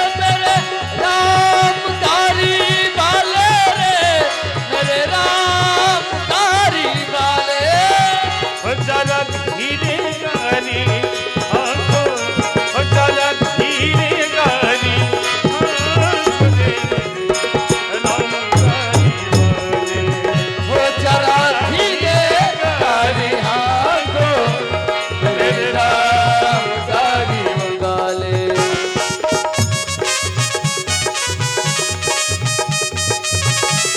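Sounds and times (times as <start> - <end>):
hand drums beating: 15.5 - 19.9, 28.6 - 33.9
person singing: 28.6 - 32.9
melodic instrument line: 28.6 - 33.9.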